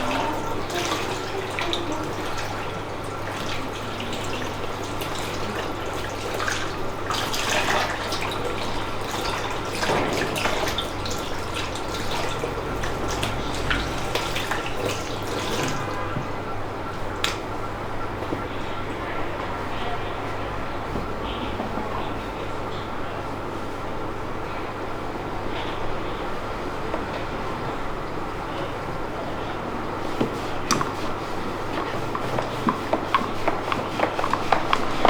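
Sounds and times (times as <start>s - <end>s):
tap water running into sink: 0.0s - 16.3s, 30.0s - 35.0s
water splashes and drips: 0.0s - 16.4s, 17.1s - 17.5s, 29.9s - 35.0s.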